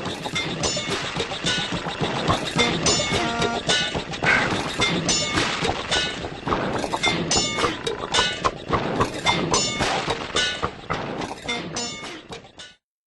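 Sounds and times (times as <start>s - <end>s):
cartoon sound effects: 2.4s - 4.6s.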